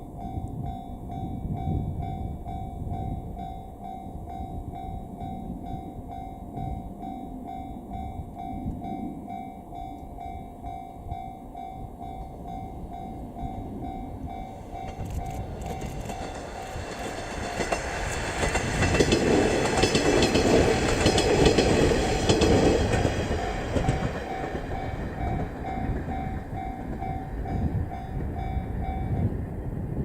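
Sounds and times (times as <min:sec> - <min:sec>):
level-crossing warning bell: 0:00.0 - 0:29.8
diesel train passing: 0:00.0 - 0:30.0
wheels clacking over rail joints: 0:14.3 - 0:28.4.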